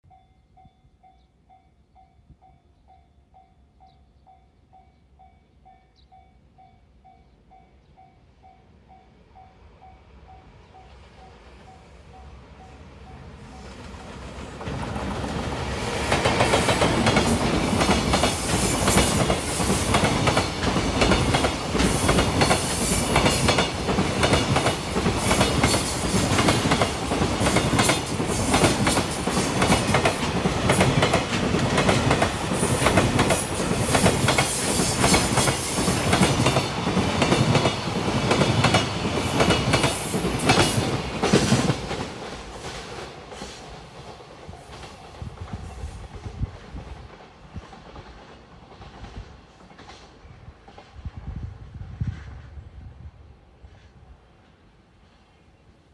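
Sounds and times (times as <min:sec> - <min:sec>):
train wheels clattering: 0:13.7 - 0:51.0.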